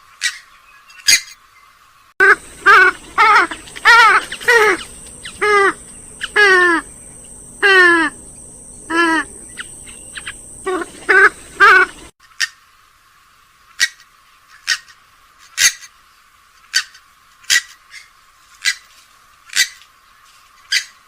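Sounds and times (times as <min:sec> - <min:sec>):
swamphen calling: 0:02.2 - 0:12.1.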